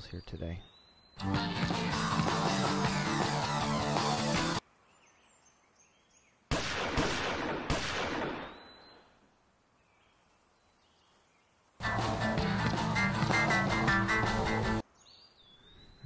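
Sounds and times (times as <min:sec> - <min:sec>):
birds chirping: 0:00.0 - 0:06.5, 0:08.3 - 0:16.0
sharp bangs with echo: 0:06.5 - 0:08.7.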